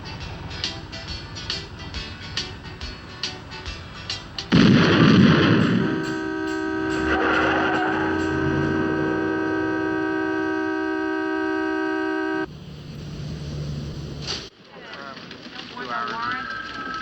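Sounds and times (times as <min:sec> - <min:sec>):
loud explosion-like blast: 0:04.5 - 0:08.2
steady horn-like blare: 0:04.5 - 0:12.5.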